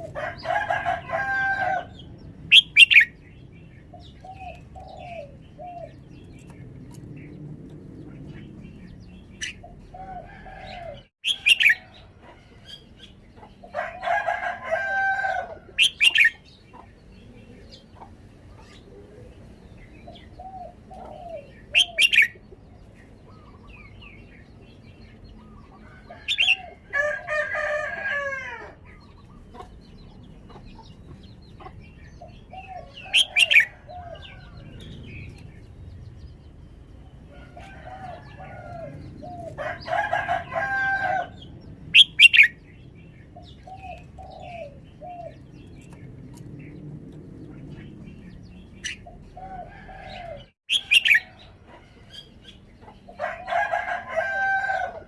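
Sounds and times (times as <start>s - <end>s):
rooster crowing: 0.0s - 2.0s, 13.7s - 15.9s, 25.8s - 28.8s, 37.3s - 41.4s, 53.2s - 55.0s.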